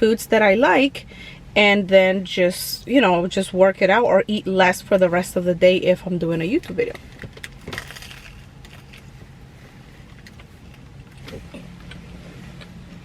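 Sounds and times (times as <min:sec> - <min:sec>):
low steady hum: 0:00.0 - 0:13.0
soft chewing: 0:08.6 - 0:13.0.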